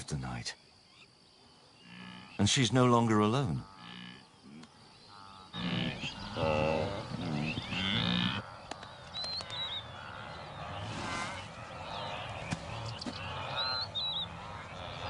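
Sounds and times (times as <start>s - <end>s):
small birds chirping: 0.0s - 15.0s
wildebeest bleating and grunting: 3.2s - 15.0s.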